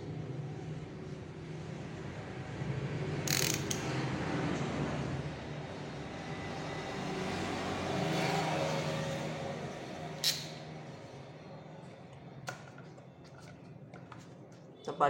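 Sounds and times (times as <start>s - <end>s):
vehicle engine passing by: 3.9s - 11.5s.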